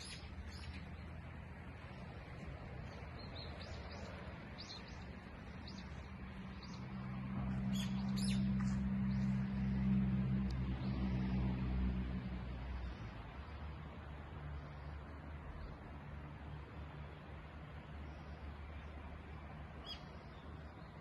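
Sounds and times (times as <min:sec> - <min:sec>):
small birds chirping: 0:00.0 - 0:01.4, 0:02.4 - 0:06.9, 0:07.5 - 0:09.4, 0:19.8 - 0:21.0
low steady engine hum: 0:00.0 - 0:21.0.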